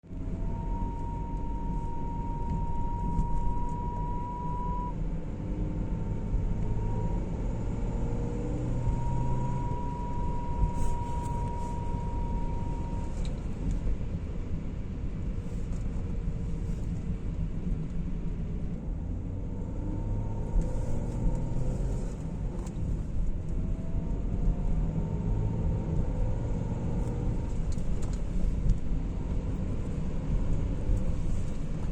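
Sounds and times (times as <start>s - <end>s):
car engine low rumble: 0.0s - 31.9s
engine whistle: 0.3s - 5.0s, 8.7s - 13.2s.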